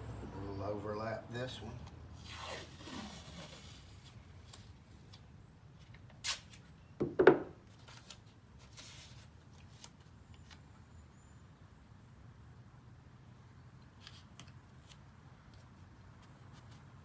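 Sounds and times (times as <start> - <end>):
adhesive tape ripping: 2.2 - 4.7, 6.2 - 6.7.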